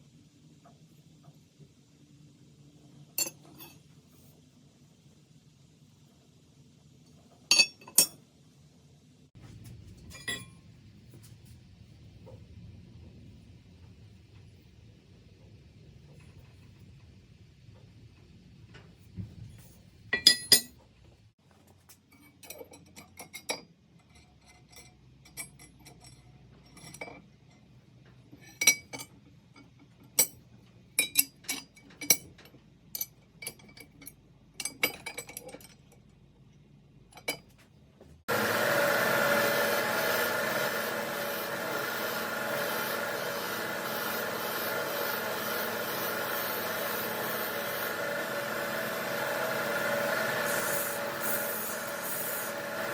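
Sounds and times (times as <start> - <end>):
metal tool parts clinking: 3.2 - 3.8, 20.2 - 20.7
electric power tool whining: 38.3 - 52.9.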